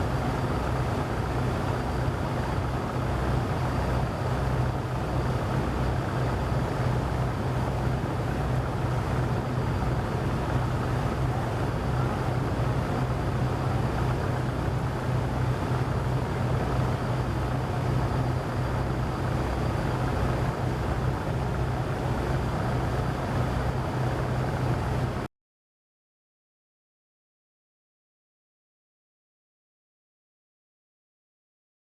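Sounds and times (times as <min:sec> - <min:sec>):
boat engine drone: 0:00.0 - 0:25.3.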